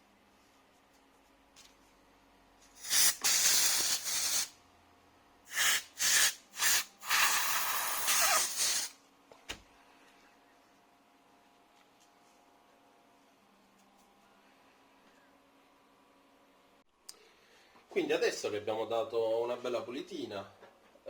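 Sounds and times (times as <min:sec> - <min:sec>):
compressed air blasting: 0:02.8 - 0:04.6, 0:05.5 - 0:09.0.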